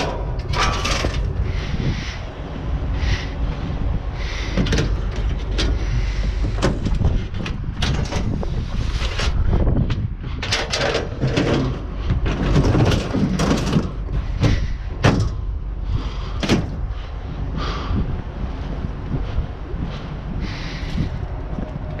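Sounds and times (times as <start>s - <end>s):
junk knocking and rattling: 0.0s - 2.0s, 4.4s - 17.0s
wind rumbling on microphone: 0.0s - 22.0s.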